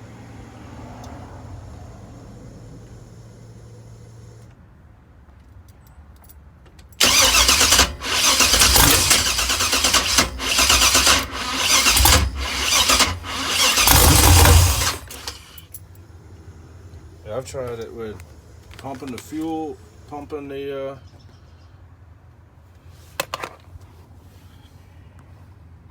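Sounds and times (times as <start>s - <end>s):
starter motor cranking engine: 7.0s - 15.6s.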